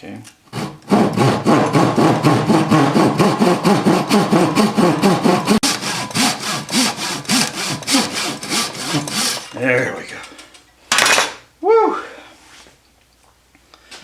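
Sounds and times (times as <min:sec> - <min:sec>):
hand saw cutting wood: 0:00.5 - 0:09.6.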